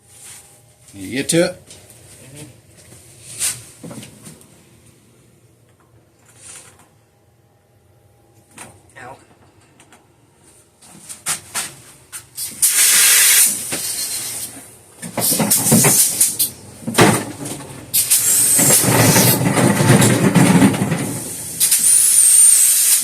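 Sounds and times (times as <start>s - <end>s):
air hissing from tire valve: 12.4s - 16.6s, 17.9s - 19.4s, 21.2s - 23.0s.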